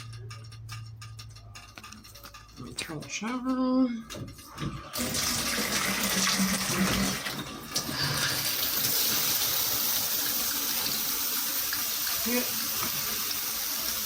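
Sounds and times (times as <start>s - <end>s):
shower water spraying: 5.0s - 14.0s.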